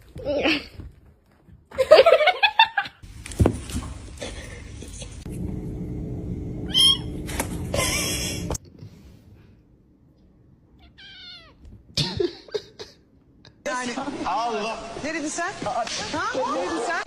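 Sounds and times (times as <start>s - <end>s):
steady low hum: 3.0s - 10.2s
kitten meowing: 10.8s - 11.7s.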